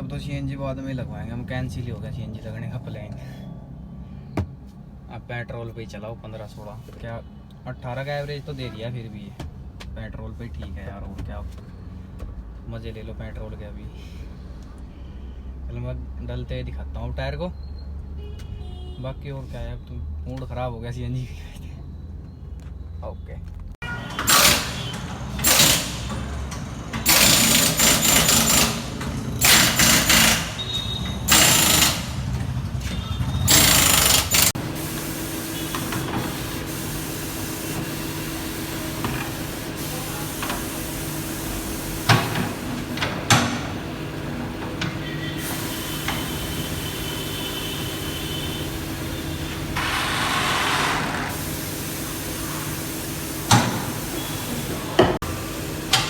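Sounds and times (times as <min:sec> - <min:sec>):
air tool bursts: 0:24.2 - 0:32.3, 0:33.3 - 0:42.7, 0:45.2 - 0:56.0
machine humming: 0:40.0 - 0:56.0.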